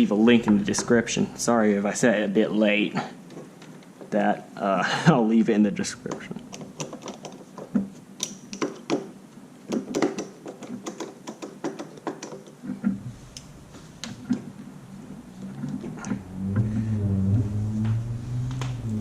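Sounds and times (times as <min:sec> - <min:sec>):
screwdriver clicking on door knob: 0:06.5 - 0:09.1, 0:09.7 - 0:12.6.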